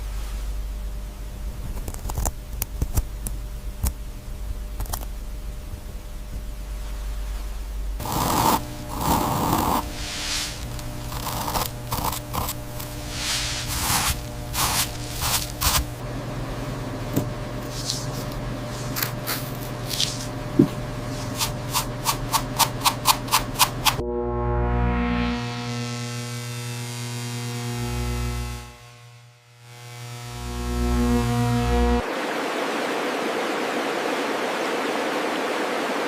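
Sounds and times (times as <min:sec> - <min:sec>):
hand tool scraping: 0:08.0 - 0:16.0.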